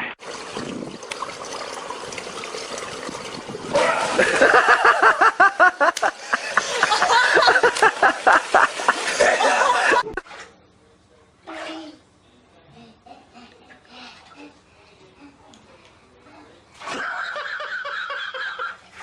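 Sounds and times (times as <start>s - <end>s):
person laughing hard: 3.9s - 10.2s.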